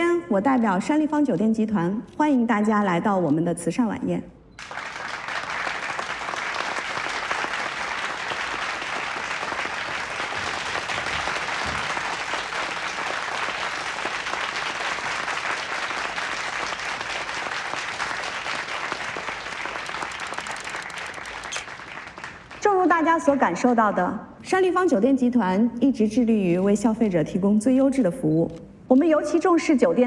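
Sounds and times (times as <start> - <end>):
audience applauding: 4.6 - 22.7.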